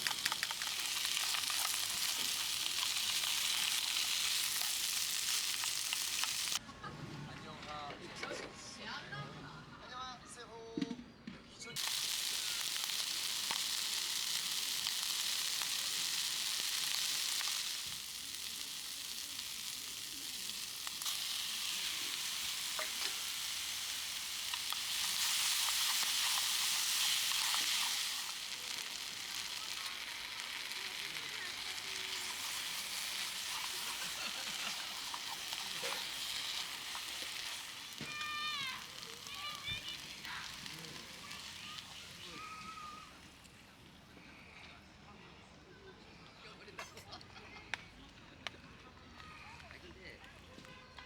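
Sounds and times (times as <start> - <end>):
food sizzling in a pan: 0.0 - 6.6, 11.8 - 43.8
utensil clicking against pan: 0.0 - 6.6.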